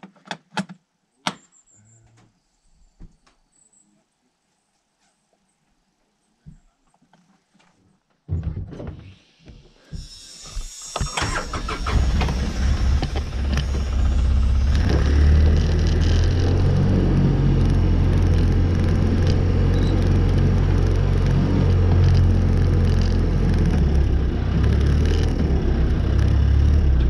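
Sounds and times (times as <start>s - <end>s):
vehicle engine starting and running: 10.8s - 27.0s.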